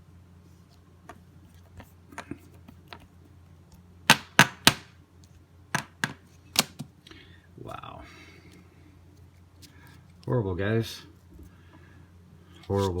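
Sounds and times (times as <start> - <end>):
trading cards snapping and clicking: 5.8 - 6.9.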